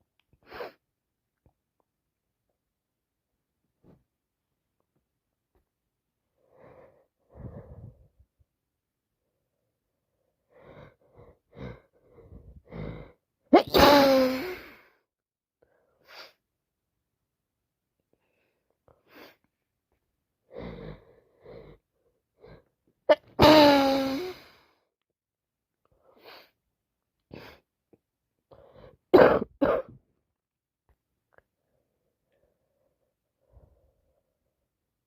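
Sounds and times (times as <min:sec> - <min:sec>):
woman coughing: 0:13.6 - 0:14.6, 0:23.1 - 0:24.3, 0:29.2 - 0:30.0
woman sneezing: 0:13.6 - 0:14.7, 0:23.1 - 0:24.4
woman sniffling: 0:13.6 - 0:14.9.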